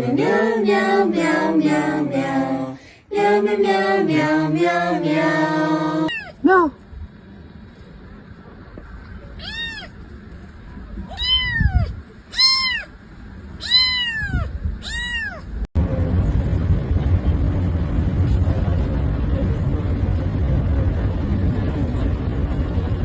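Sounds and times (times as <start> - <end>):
steady low noise: 0.0 - 6.1, 6.7 - 11.1, 15.6 - 23.0
cat meowing: 6.1 - 6.4, 9.4 - 10.0, 11.1 - 12.9, 13.6 - 15.5.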